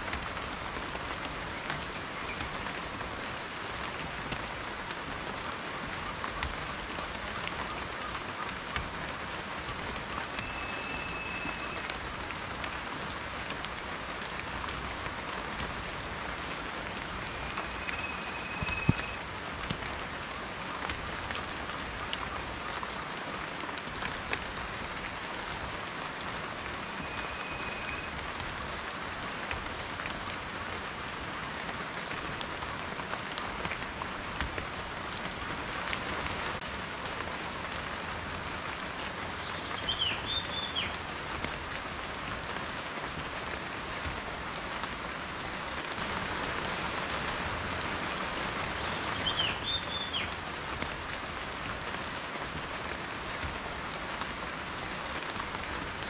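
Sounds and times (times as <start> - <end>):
raindrops ticking close by: 0.0 - 56.0
steady rain falling: 0.0 - 56.0
faint high whistled notes: 10.4 - 11.9, 17.3 - 19.2.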